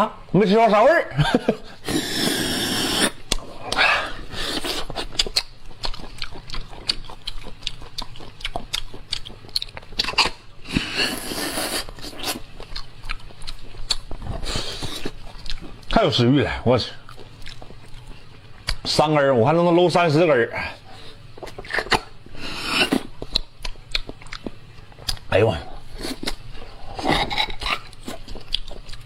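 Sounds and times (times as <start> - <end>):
person slurping: 1.7 - 5.4, 10.0 - 12.5, 14.4 - 15.2, 21.5 - 23.1, 25.7 - 28.3
wet chewing: 2.0 - 16.1, 16.8 - 18.9, 21.3 - 29.0.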